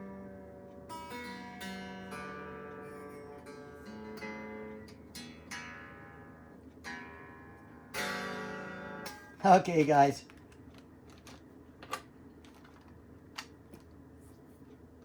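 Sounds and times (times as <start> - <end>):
strummed guitar chord: 6.9 - 9.9.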